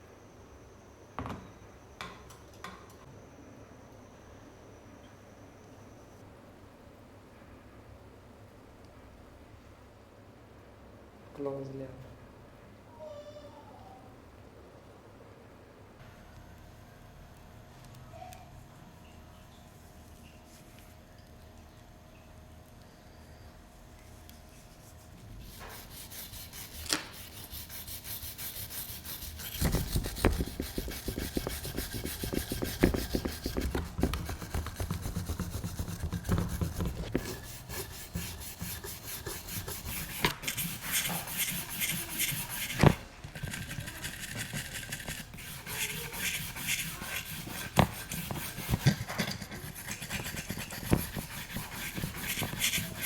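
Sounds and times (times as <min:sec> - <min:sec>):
abrasive rubbing on metal: 0:24.9 - 0:53.0.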